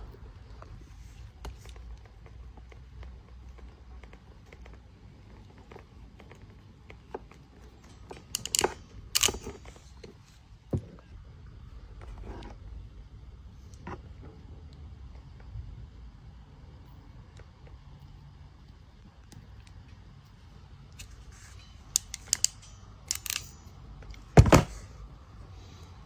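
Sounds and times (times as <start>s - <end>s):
metal and plastic clacks: 7.7s - 10.2s, 20.9s - 24.9s
crimping tool clicks: 22.0s - 23.6s.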